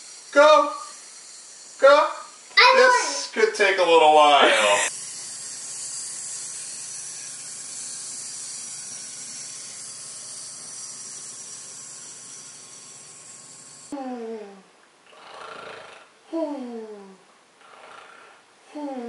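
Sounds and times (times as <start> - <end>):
toy motor whirring: 0.0 - 14.0.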